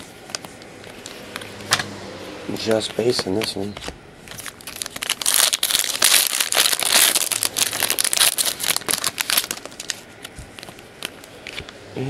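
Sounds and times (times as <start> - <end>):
wrapper crinkling: 4.3 - 11.7.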